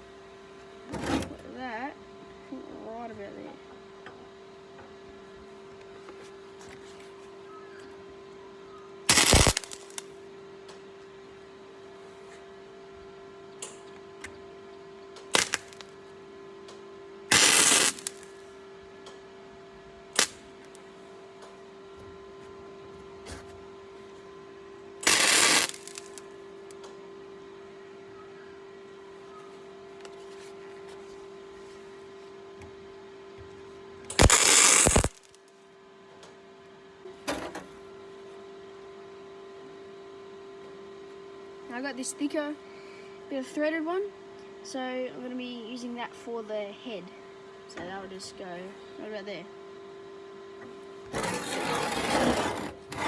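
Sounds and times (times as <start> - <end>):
welder hum: 9.1 - 10.1, 15.3 - 15.9, 17.3 - 18.3, 25.0 - 26.3, 34.1 - 35.4
welding arc crackling: 9.1 - 10.1, 15.4 - 15.9, 17.3 - 18.3, 20.2 - 20.4, 25.0 - 26.2, 34.1 - 35.3.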